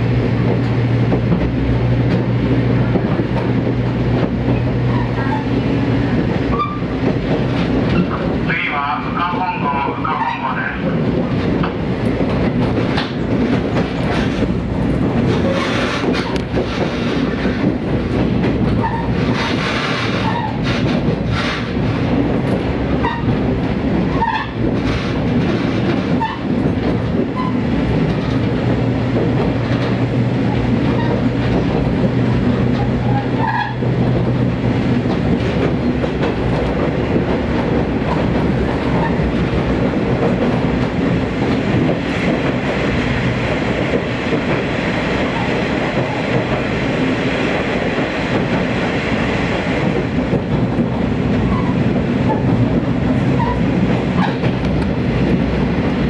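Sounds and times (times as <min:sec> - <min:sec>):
train rumble: 0:00.0 - 0:56.0
wheels clicking over rail joints: 0:09.8 - 0:56.0.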